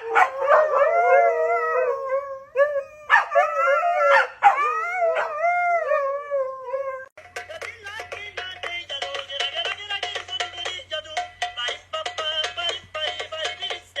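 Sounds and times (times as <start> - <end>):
dog howling: 0.0 - 7.1.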